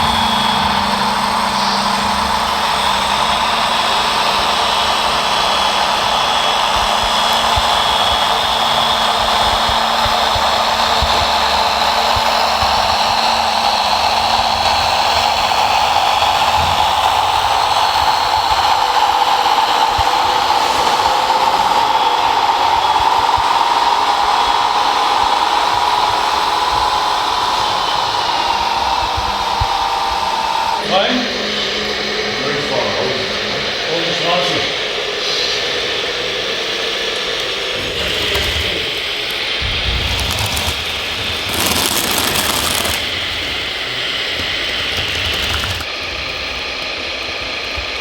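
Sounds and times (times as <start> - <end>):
electric motors whining: 0.0 - 23.8, 34.4 - 48.0.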